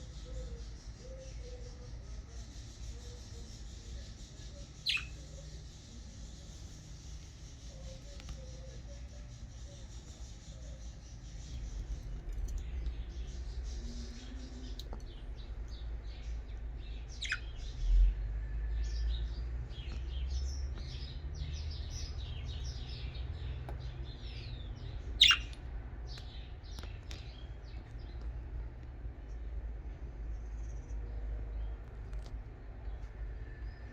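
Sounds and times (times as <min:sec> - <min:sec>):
budgerigars chirping: 0:04.8 - 0:05.2, 0:17.1 - 0:17.6, 0:25.2 - 0:25.6.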